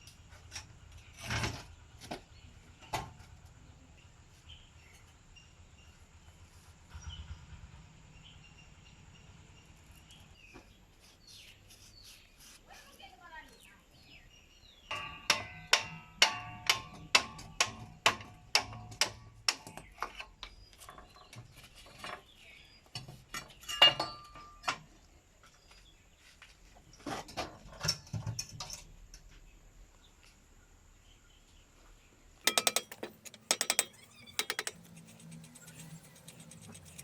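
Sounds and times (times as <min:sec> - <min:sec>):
hammer striking metal: 0:14.9 - 0:17.8, 0:32.5 - 0:34.8
knocks: 0:32.5 - 0:34.8
metal clinks: 0:32.5 - 0:37.0.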